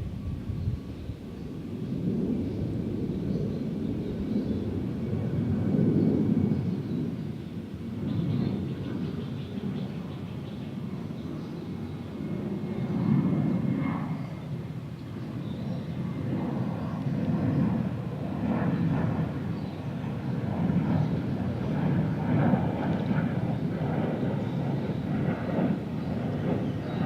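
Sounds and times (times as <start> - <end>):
airplane engine drone overhead: 0.0 - 27.0
city park background: 6.2 - 27.0.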